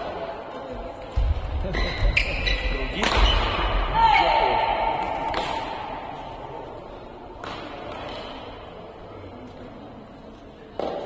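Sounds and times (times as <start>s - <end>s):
racket hitting shuttlecock: 2.2s - 3.8s, 4.9s - 6.6s, 7.4s - 8.8s, 10.8s - 11.0s.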